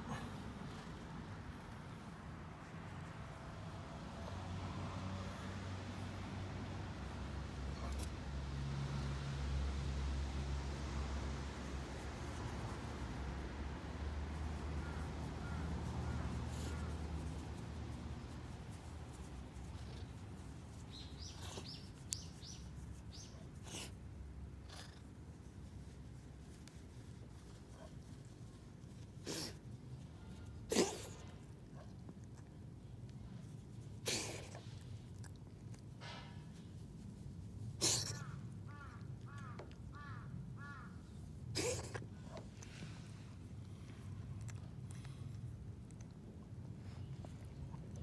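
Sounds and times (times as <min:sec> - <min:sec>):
small bird chirping: 0:20.7 - 0:23.4
cat sneezing: 0:29.2 - 0:29.7, 0:30.6 - 0:31.4, 0:34.0 - 0:34.8, 0:37.7 - 0:38.4, 0:41.5 - 0:42.4.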